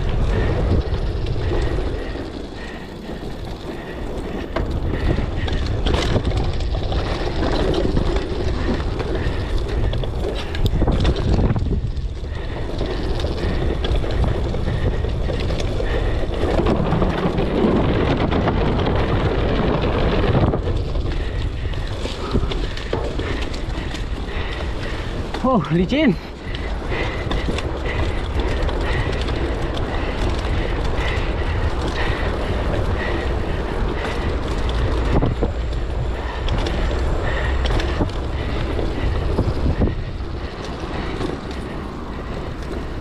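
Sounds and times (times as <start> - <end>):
bike and tyres rattling: 0.0 - 43.0
wind buffeting microphone: 0.0 - 43.0.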